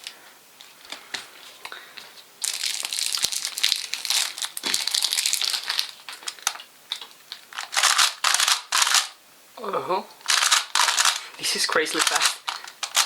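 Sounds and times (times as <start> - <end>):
plastic puzzle clicking and clacking: 10.2 - 13.0.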